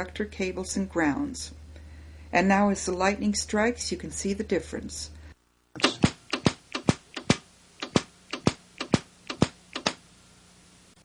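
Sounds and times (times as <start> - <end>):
electrical spark snaps: 5.8 - 10.0.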